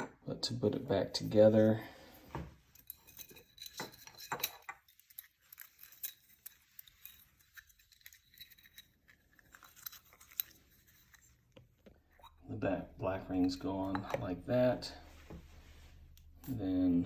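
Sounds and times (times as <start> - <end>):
small parts clicking and tapping: 2.7 - 11.9.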